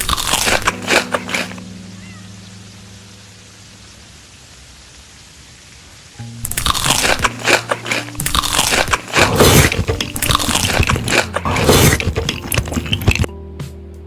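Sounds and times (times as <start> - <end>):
crunching crisp food: 0.0 - 1.6, 6.5 - 13.3.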